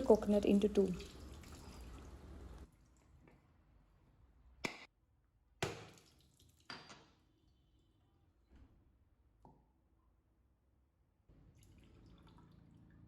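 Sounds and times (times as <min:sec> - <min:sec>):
tap water running: 0:00.0 - 0:02.6.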